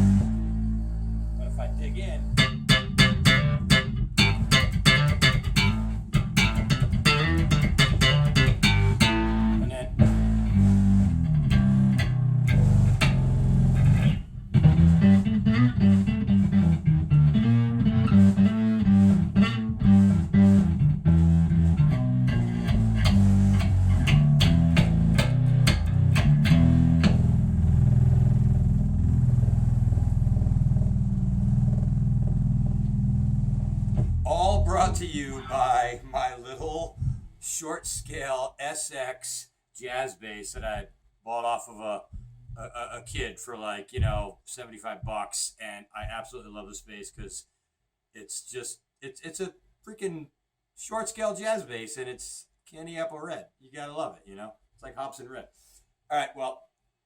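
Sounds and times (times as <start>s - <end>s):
fuzzy electric bass: 0.0s - 37.4s.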